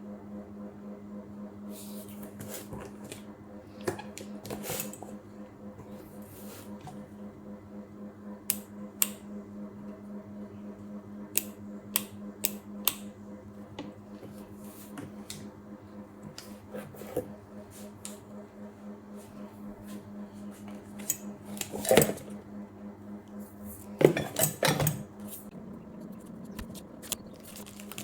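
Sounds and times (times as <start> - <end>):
steady low hum: 0.0 - 28.0
handling noise: 23.7 - 28.0.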